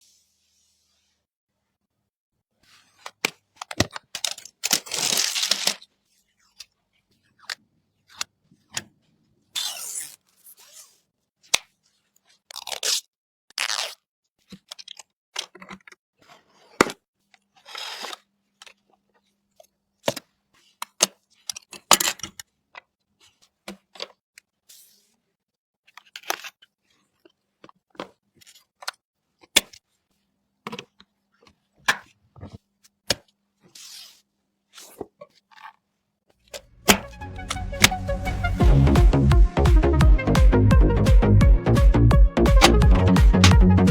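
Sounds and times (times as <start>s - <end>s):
packaging crinkling and tearing: 3.7s - 5.9s, 12.5s - 14.0s.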